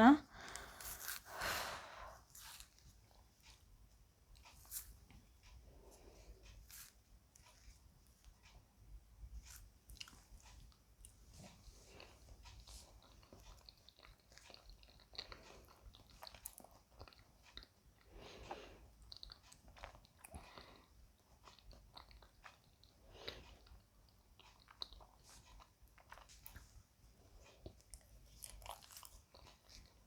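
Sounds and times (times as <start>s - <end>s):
person chewing: 0.4s - 3.6s, 9.4s - 30.0s.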